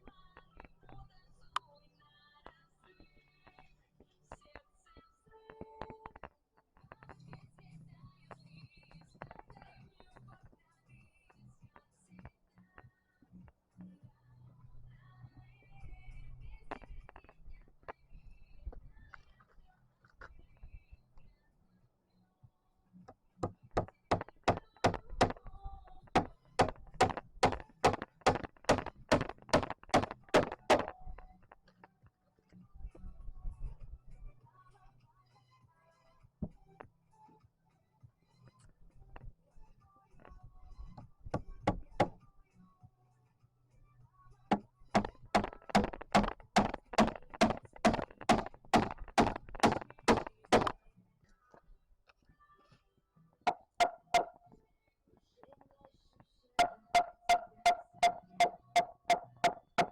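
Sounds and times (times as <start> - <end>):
hammer striking nail into wood: 23.4 - 25.4, 26.2 - 30.9, 41.4 - 42.2, 44.5 - 50.8, 53.5 - 54.4, 56.6 - 59.9.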